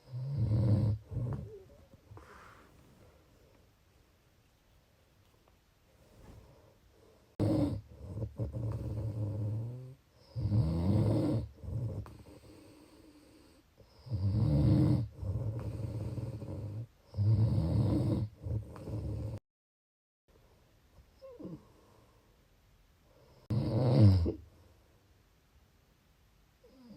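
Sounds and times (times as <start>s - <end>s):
person snoring: 0.0s - 2.6s, 7.3s - 19.4s.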